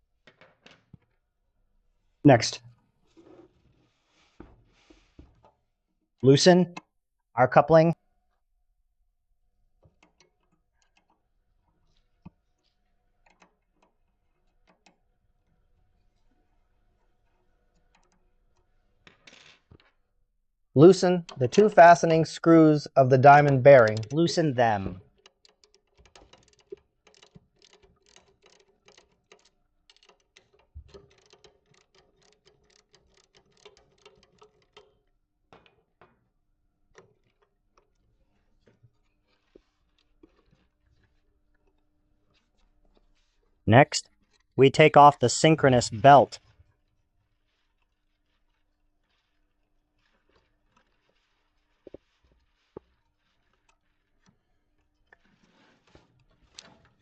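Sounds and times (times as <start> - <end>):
ratchet tool clicking: 25.1 - 34.9.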